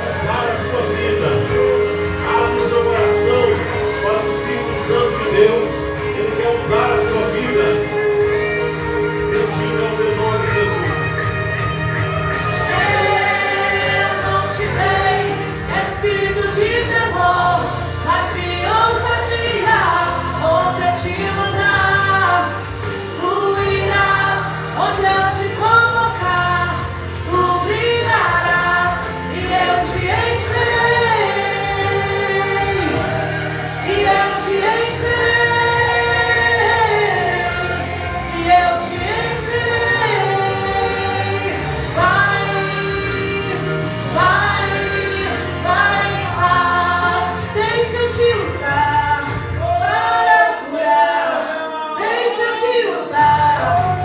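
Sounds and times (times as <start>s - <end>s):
woman singing: 0.0s - 51.4s, 52.0s - 54.0s
band accompaniment: 0.0s - 54.0s
choir singing: 0.0s - 54.0s.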